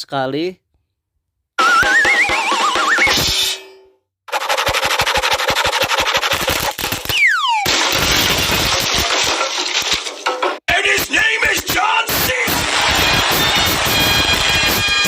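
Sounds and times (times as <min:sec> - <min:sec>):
falling whistle: 0:01.6 - 0:03.2, 0:07.1 - 0:07.7, 0:12.6 - 0:15.0
automatic machine-gun fire: 0:07.7 - 0:09.8.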